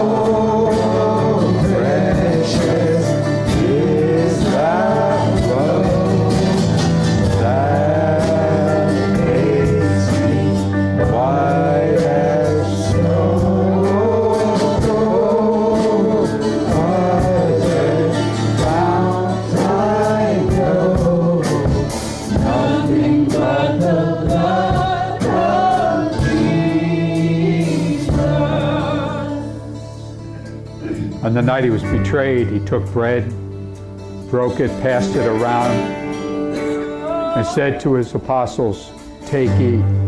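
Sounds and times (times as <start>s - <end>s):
group of voices singing: 0.0s - 31.2s, 36.5s - 37.9s
bass line: 0.0s - 38.3s
drum beat: 18.6s - 28.6s.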